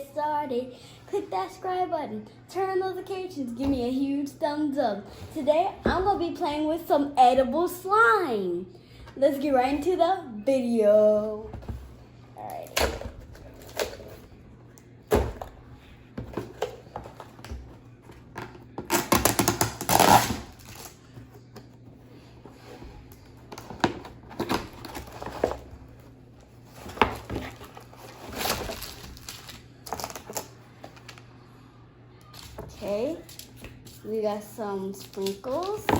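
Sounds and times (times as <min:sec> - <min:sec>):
packets rustling: 0:26.6 - 0:31.2.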